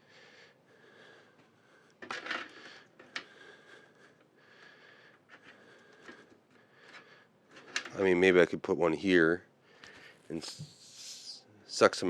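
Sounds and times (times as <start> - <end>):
faint steady hum: 0.0 - 12.0
rustle of handling parts: 1.4 - 3.4, 5.1 - 8.0.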